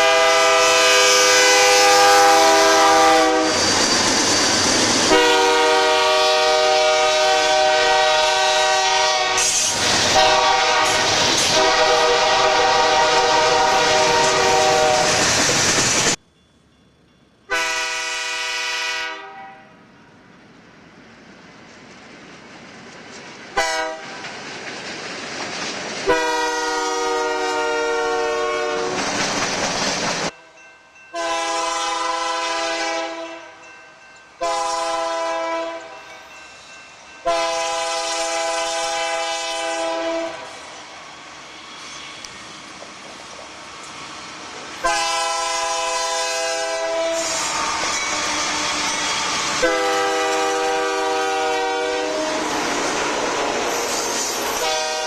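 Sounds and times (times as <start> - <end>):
locomotive air horn blasts: 0.0 - 3.6, 5.1 - 15.3, 17.5 - 19.8, 23.6 - 24.2, 26.1 - 29.1, 31.1 - 33.6, 34.4 - 36.0, 37.2 - 40.6, 44.8 - 55.0
train and rail noise: 0.0 - 55.0.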